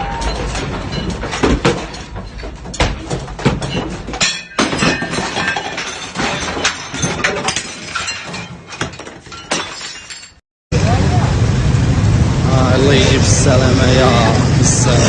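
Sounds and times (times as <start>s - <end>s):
glass breaking: 0.0s - 10.4s
objects falling and clattering: 0.0s - 10.4s.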